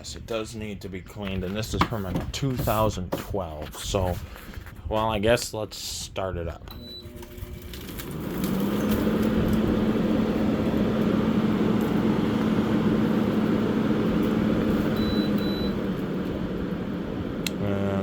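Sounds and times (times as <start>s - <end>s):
air conditioner fan humming: 4.9s - 18.0s.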